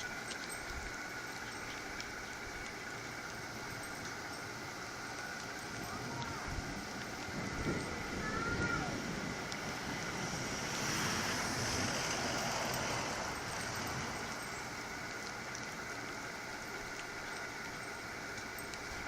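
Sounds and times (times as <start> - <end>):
wind buffeting microphone: 5.4 - 15.7
storm wind rushing: 6.0 - 13.3.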